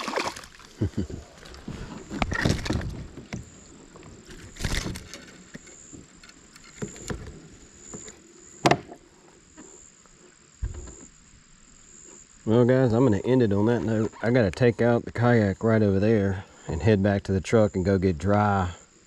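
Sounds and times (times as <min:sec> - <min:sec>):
handling noise: 0:00.0 - 0:09.0
knocks and clatter on a kayak: 0:01.2 - 0:09.0, 0:10.6 - 0:11.1.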